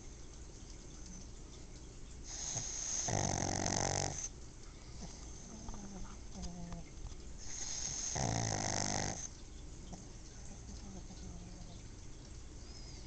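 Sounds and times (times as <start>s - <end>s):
dog snoring loudly: 2.3s - 4.3s, 7.4s - 9.3s.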